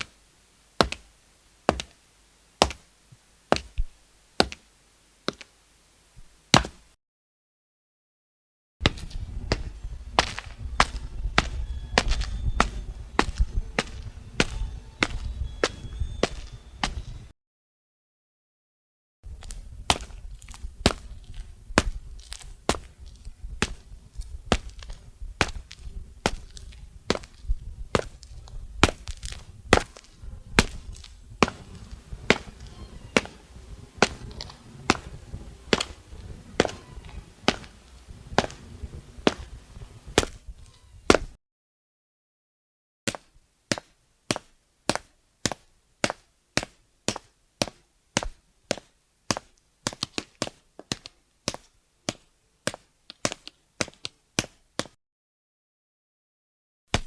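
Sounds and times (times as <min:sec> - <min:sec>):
footsteps walking: 0:00.0 - 0:05.6, 0:08.8 - 0:17.3, 0:19.3 - 0:41.4, 0:43.1 - 0:54.9
low rumble: 0:30.3 - 0:40.5.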